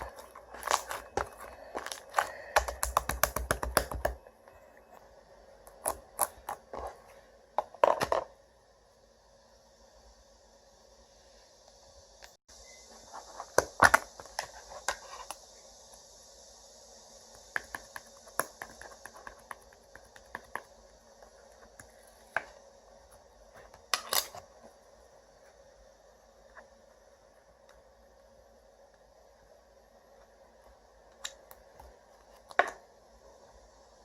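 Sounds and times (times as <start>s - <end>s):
slime clicking and popping: 2.6s - 4.2s.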